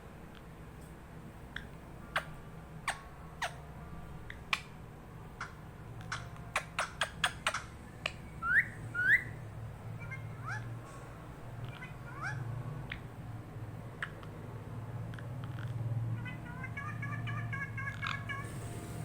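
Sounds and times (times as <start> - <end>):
parrot chirps and clicks: 1.5 - 3.6, 4.3 - 4.8, 5.4 - 9.3, 14.0 - 14.4, 15.1 - 18.4
parrot rising whistles: 8.3 - 9.4.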